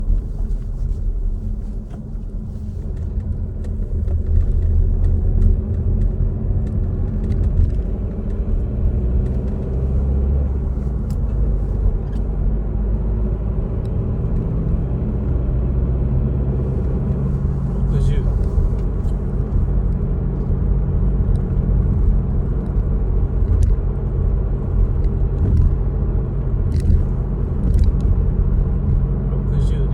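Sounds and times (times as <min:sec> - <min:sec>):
car road and engine rumble: 0:00.0 - 0:29.9.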